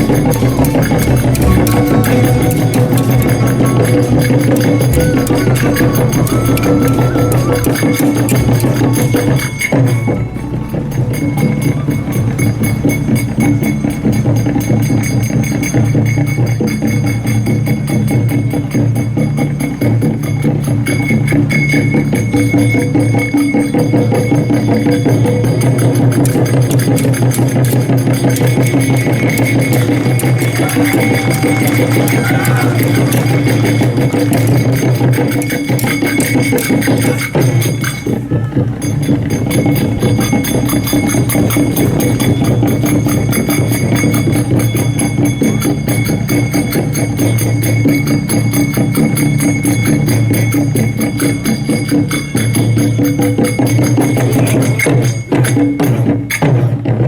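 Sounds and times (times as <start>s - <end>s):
loud drum-driven music: 0.0s - 57.0s.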